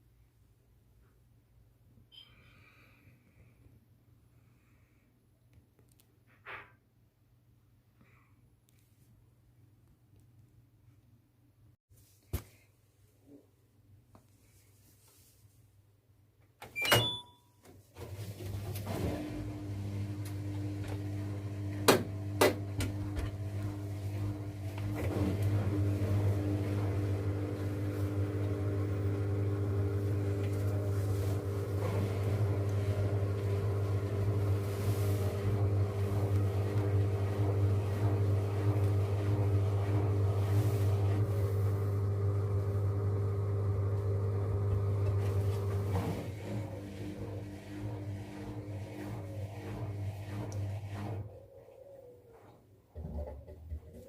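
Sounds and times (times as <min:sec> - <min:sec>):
washing machine drum hum: 0:18.0 - 0:51.2.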